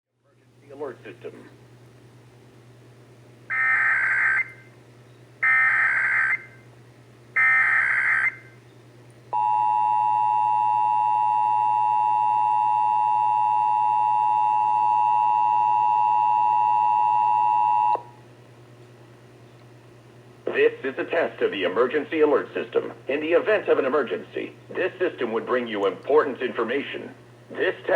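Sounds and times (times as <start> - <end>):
faint low hum: 0.2 - 27.9.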